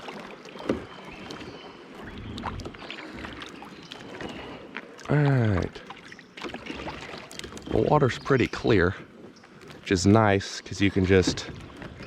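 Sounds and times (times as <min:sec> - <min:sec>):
branches scraping against kayak: 0:00.6 - 0:05.0, 0:06.4 - 0:12.0.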